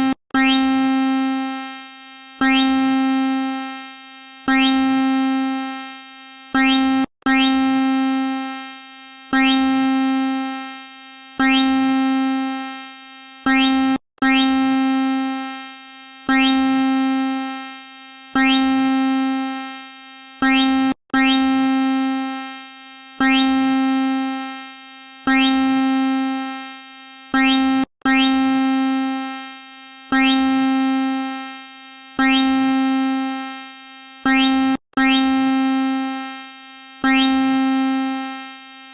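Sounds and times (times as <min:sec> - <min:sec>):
buzzy alarm tone: 0:00.0 - 0:01.6, 0:02.4 - 0:03.8, 0:04.5 - 0:05.8, 0:06.6 - 0:08.6, 0:09.3 - 0:10.7, 0:11.4 - 0:12.8, 0:13.5 - 0:15.5, 0:16.3 - 0:17.7, 0:18.4 - 0:19.7, 0:20.4 - 0:22.4, 0:23.2 - 0:24.5, 0:25.3 - 0:26.6, 0:27.4 - 0:29.4, 0:30.1 - 0:31.5, 0:32.2 - 0:33.6, 0:34.2 - 0:36.4, 0:37.0 - 0:38.6.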